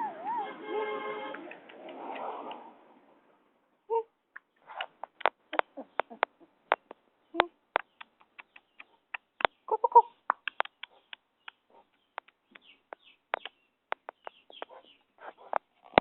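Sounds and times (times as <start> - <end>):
puppies squeaking and yipping: 0.0 - 0.7, 4.6 - 6.9, 10.5 - 13.5, 14.1 - 15.6.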